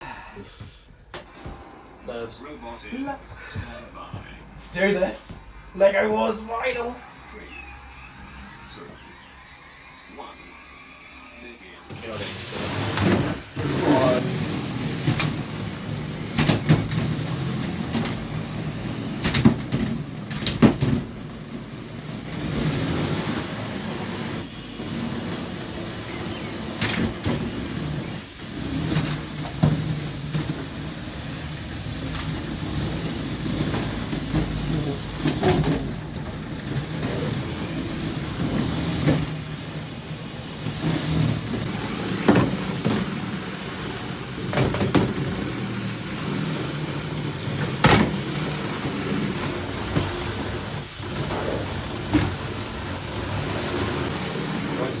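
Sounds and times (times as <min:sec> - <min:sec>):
electric motors whirring: 0:07.2 - 0:55.0
plastic knocks and clatters: 0:44.5 - 0:45.5.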